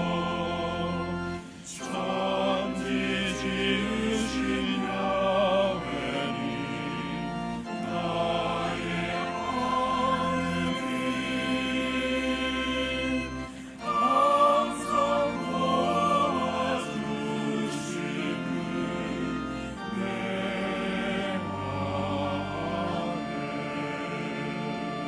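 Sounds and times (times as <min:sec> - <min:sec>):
choir singing: 0:00.0 - 0:25.0
organ playing: 0:00.0 - 0:25.0.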